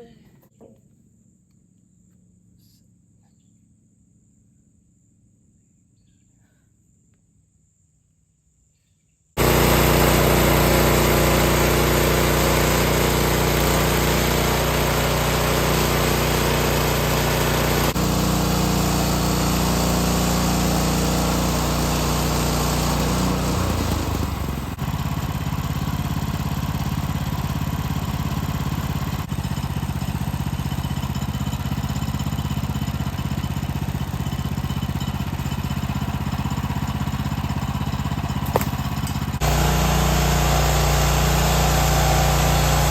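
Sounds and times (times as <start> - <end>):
small gasoline engine running: 9.4 - 42.9.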